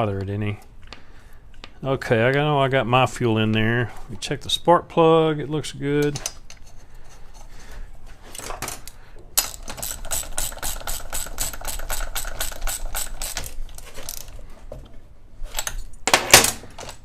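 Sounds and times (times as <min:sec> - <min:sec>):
ratchet wrench clicking: 0:09.4 - 0:14.3.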